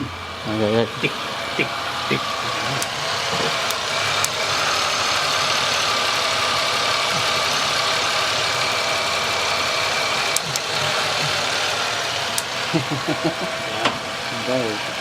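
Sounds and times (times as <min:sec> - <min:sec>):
car engine idling: 0:00.0 - 0:15.0
sharp ticks: 0:10.3 - 0:10.7, 0:12.3 - 0:12.6.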